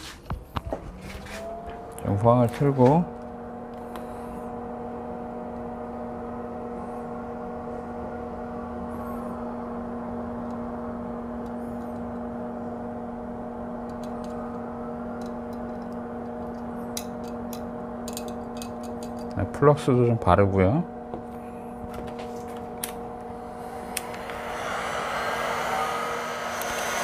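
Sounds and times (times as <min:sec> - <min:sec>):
constant hum: 0:00.0 - 0:27.0
electric fans whirring: 0:00.0 - 0:27.0
hot-air gun running: 0:21.2 - 0:27.0.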